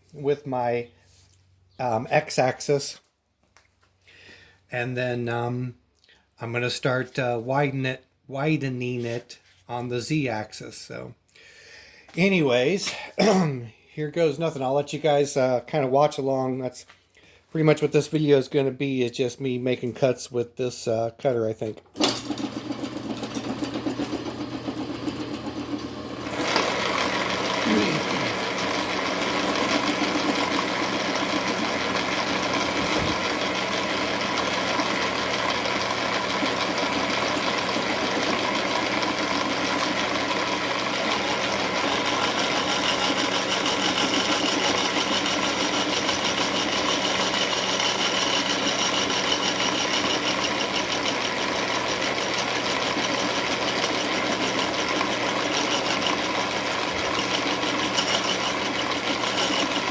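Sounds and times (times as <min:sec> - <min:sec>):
milling machine cutting metal: 0:22.0 - 0:59.9.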